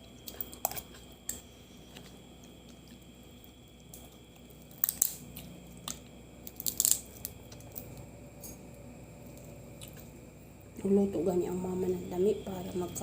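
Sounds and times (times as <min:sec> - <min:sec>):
crab shell cracking: 0:03.8 - 0:07.9.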